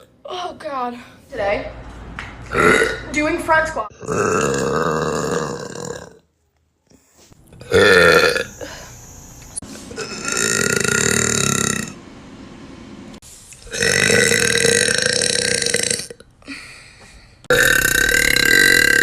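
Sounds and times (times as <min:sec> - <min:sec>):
woman burping: 0:02.5 - 0:03.1, 0:03.9 - 0:06.2, 0:07.6 - 0:09.0, 0:13.7 - 0:16.3, 0:17.5 - 0:19.0.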